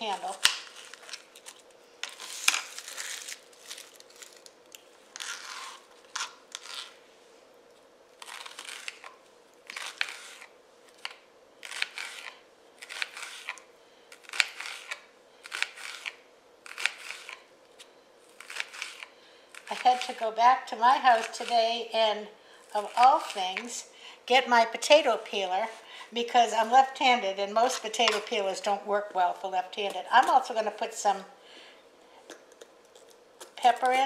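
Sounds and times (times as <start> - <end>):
faint steady hum: 0.0 - 34.0
knife slicing onion: 8.2 - 17.5, 18.3 - 22.0, 22.8 - 23.8.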